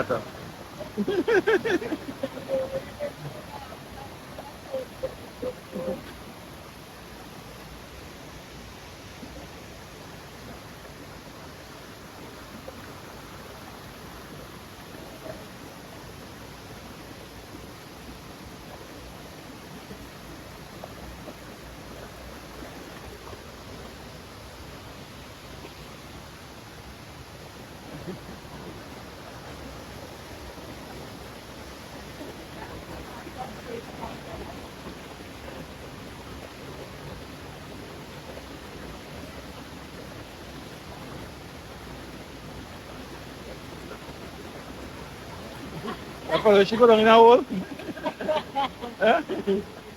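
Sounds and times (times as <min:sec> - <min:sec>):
waterfall rushing: 0:00.0 - 0:10.2, 0:27.1 - 0:49.9.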